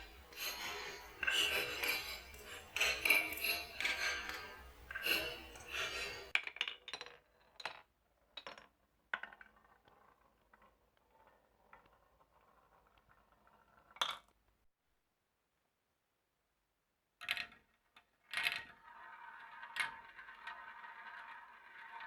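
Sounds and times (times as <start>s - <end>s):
marbles clicking down a marble run: 18.3s - 22.0s.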